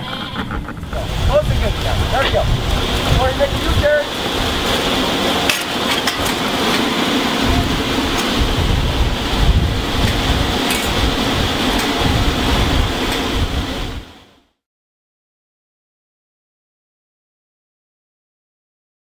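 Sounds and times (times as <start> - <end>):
wind buffeting microphone: 0.0 - 14.2
steady hiss: 0.0 - 14.3.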